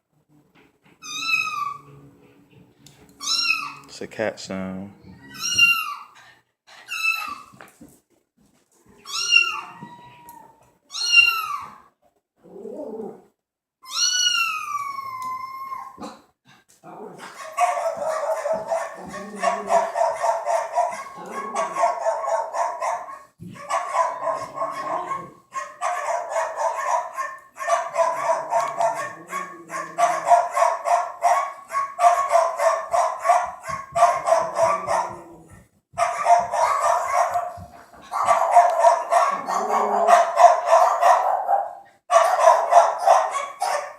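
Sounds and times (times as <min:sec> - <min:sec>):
cat meowing: 0:01.0 - 0:01.9, 0:03.2 - 0:03.9, 0:05.0 - 0:06.1, 0:06.9 - 0:07.5, 0:08.9 - 0:11.9, 0:13.8 - 0:16.1, 0:17.9 - 0:22.0
dog yapping: 0:01.0 - 0:01.9, 0:03.2 - 0:03.8, 0:05.2 - 0:06.2, 0:06.8 - 0:07.6, 0:09.0 - 0:11.9, 0:17.2 - 0:35.3, 0:36.0 - 0:43.9.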